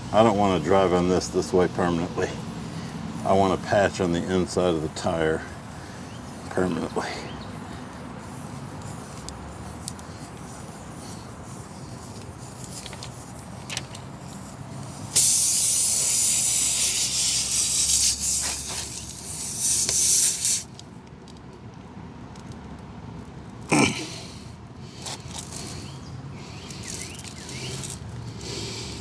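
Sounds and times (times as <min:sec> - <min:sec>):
air hissing from tire: 0:01.8 - 0:03.4, 0:05.3 - 0:20.8, 0:24.1 - 0:29.0
tool clicks and scrapes: 0:08.4 - 0:20.8, 0:25.0 - 0:29.0.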